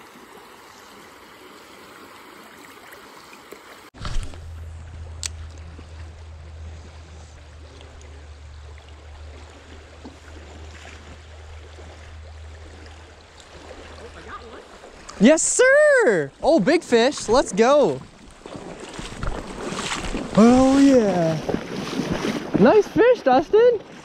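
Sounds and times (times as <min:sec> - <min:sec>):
river water flowing: 0:00.0 - 0:24.0
low rumble: 0:04.0 - 0:09.8.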